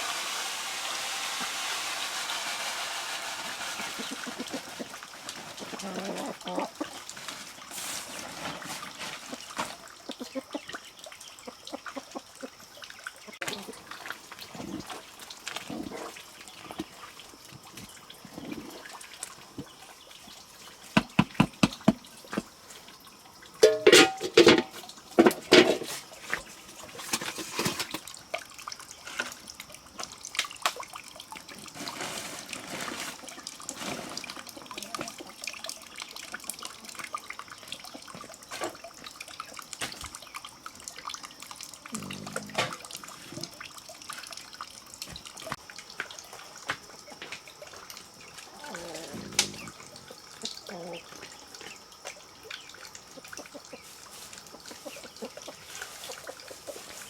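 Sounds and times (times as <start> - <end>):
hand mill grinding corn: 0.0 - 6.2.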